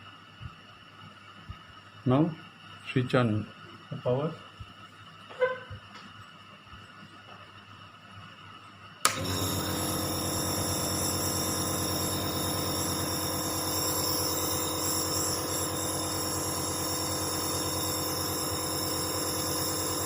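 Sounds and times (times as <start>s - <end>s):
nebulizer compressor pulsing hum: 9.0s - 20.0s.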